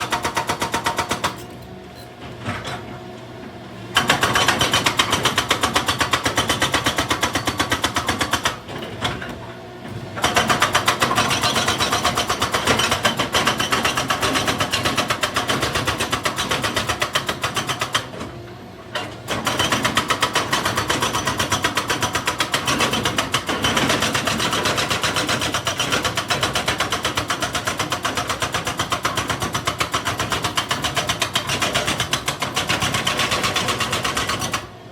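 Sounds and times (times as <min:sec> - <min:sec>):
hydraulic breaker hammering rock: 0:00.0 - 0:01.7, 0:03.9 - 0:34.8.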